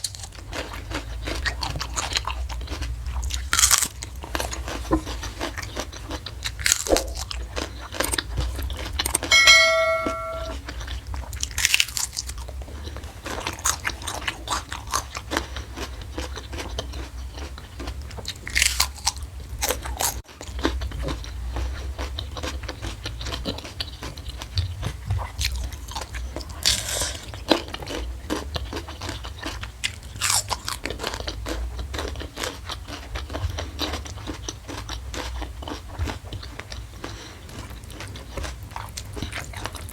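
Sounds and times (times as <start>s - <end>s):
crunchy bites and chewing: 0.0s - 9.2s, 11.3s - 12.6s, 13.2s - 39.9s
brief ringing tone: 9.3s - 10.6s.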